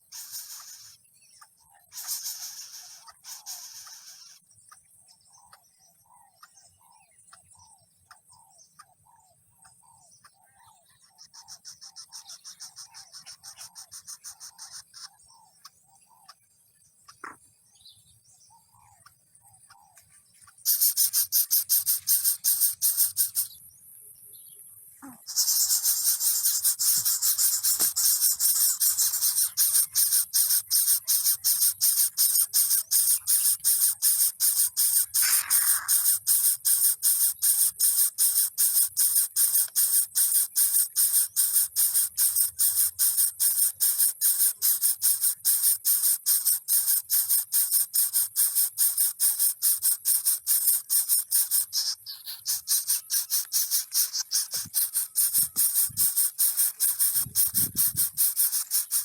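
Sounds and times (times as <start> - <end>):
rapidly pulsing high buzz: 46.2 - 59.0.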